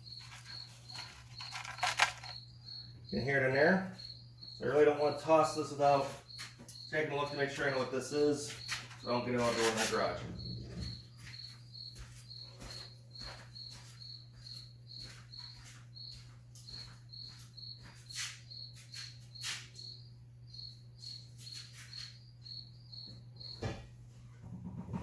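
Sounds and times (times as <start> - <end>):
cricket chirping: 0.0 - 23.9.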